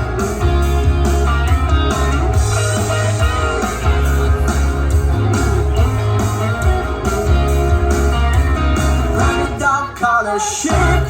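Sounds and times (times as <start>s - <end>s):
upbeat pop-rock backing music: 0.0s - 11.0s
person singing: 9.2s - 11.0s.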